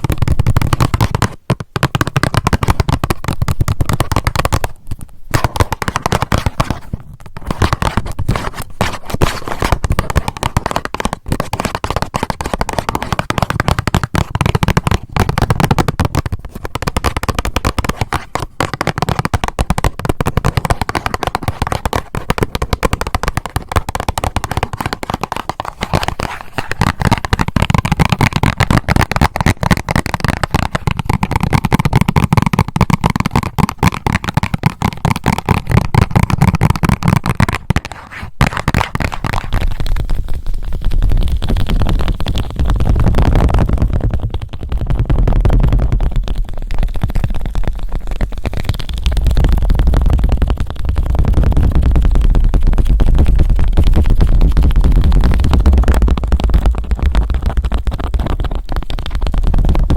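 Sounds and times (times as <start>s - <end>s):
fingernails tapping on a box: 0.0s - 4.7s, 5.3s - 39.6s.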